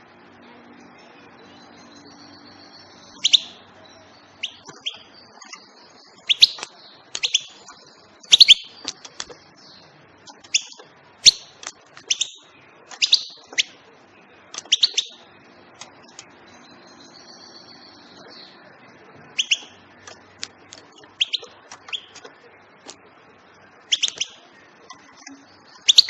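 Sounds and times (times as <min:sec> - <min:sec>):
goldfinch chirping: 0:01.6 - 0:13.8, 0:14.6 - 0:15.3, 0:19.4 - 0:20.2, 0:20.8 - 0:22.3, 0:23.9 - 0:26.0.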